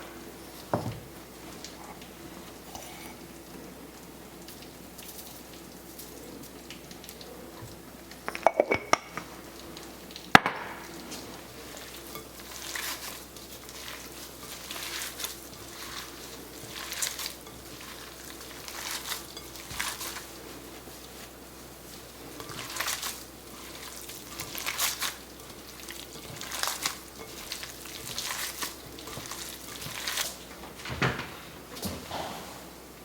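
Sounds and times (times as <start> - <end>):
food sizzling in a pan: 0.0 - 30.7
clinks in a pan: 8.2 - 9.3.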